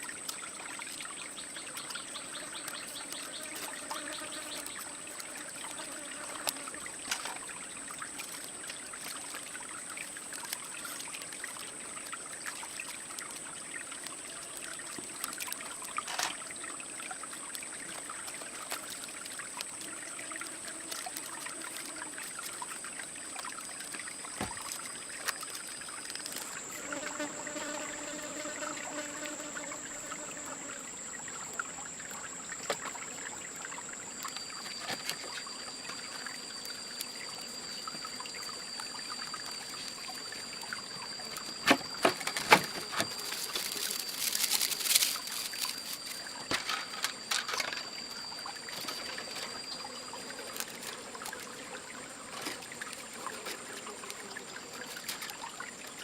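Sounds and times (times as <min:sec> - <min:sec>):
water trickling: 0:00.0 - 0:56.0
high-pitched whine: 0:31.6 - 0:51.0.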